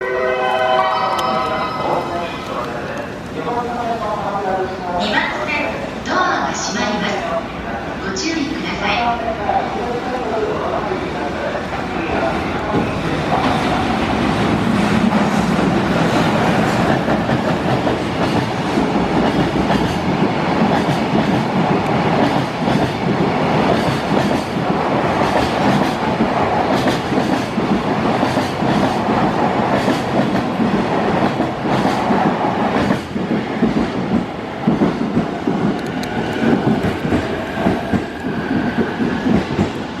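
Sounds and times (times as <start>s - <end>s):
train wheels rumbling on rails: 9.8s - 40.0s
wheels clickety-clack on rail joints: 14.4s - 40.0s.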